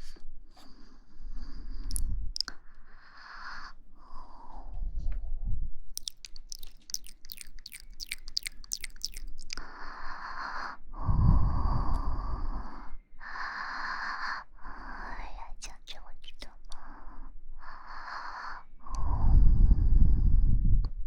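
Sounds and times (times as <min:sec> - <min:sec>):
breathing into microphone: 0:00.0 - 0:05.0, 0:09.5 - 0:15.4, 0:16.8 - 0:20.7
wet mouth clicks: 0:01.9 - 0:02.6, 0:06.0 - 0:09.7, 0:15.4 - 0:16.9.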